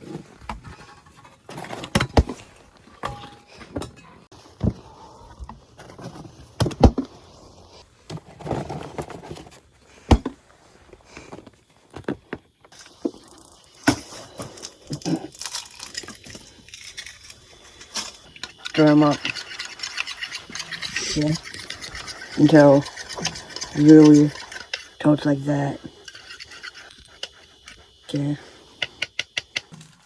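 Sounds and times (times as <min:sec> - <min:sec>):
rustling: 0:00.0 - 0:25.1
objects knocking and clicking: 0:28.8 - 0:30.0.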